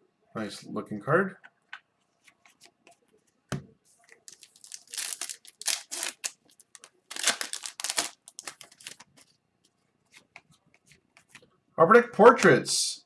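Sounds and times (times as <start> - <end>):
packaging crinkling and tearing: 4.2 - 9.2.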